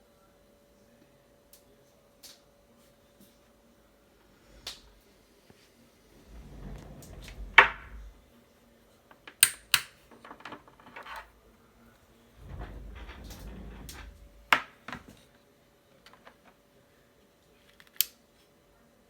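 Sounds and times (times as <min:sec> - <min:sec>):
light rattling: 0:06.2 - 0:08.2, 0:12.0 - 0:15.2.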